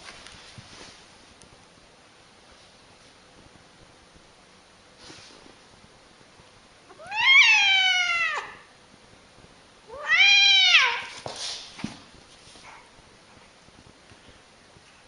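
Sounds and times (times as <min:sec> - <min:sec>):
angry cat yowling: 0:07.0 - 0:08.6, 0:09.9 - 0:11.1.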